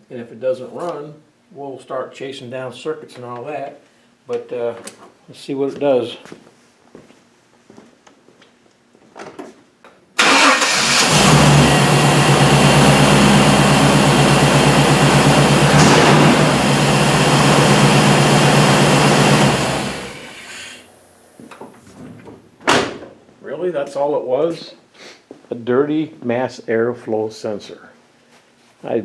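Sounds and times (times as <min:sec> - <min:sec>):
truck engine cranking and running: 0:10.2 - 0:21.0.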